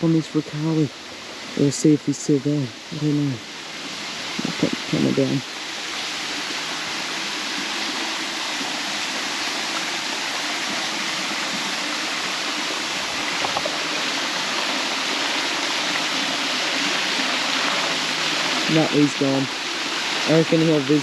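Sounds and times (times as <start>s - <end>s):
creek water rushing over rocks: 0.0s - 21.0s.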